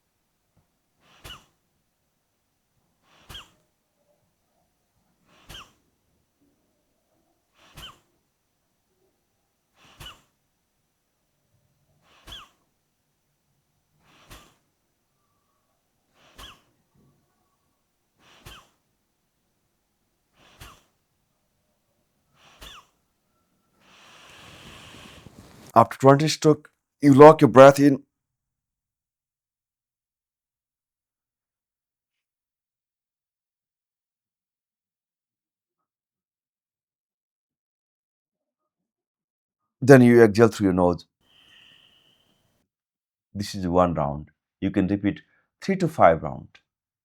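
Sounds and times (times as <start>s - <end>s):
forceful nasal exhalations: 1.0s - 1.6s, 3.0s - 3.6s, 5.2s - 5.8s, 7.5s - 8.1s, 9.7s - 10.4s, 12.0s - 12.6s, 14.0s - 14.7s, 16.1s - 16.8s, 18.2s - 18.9s, 20.3s - 21.0s, 22.3s - 23.1s, 23.8s - 26.0s
long drawn-in breath: 14.0s - 14.7s, 22.3s - 25.7s.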